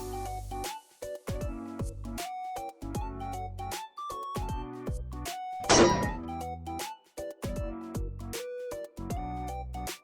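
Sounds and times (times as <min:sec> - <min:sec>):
electronic music with drum beat: 0:00.0 - 0:10.0.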